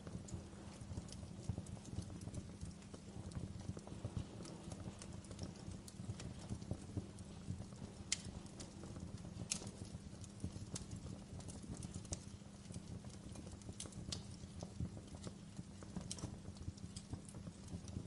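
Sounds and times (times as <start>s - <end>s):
low steady rumble: 0.0s - 18.0s
wood fire crackling: 0.0s - 18.0s.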